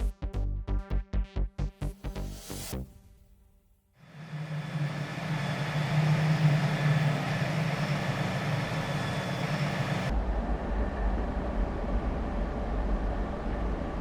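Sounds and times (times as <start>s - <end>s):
engine-like roar: 4.0s - 14.0s.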